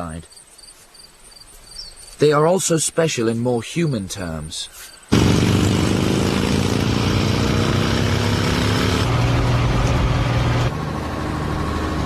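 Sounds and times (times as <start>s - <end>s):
vehicle engine running: 5.1s - 12.0s.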